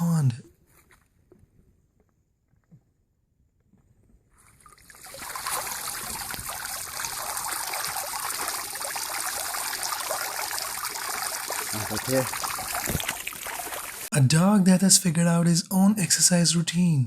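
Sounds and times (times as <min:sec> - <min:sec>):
water running: 0:04.6 - 0:14.1.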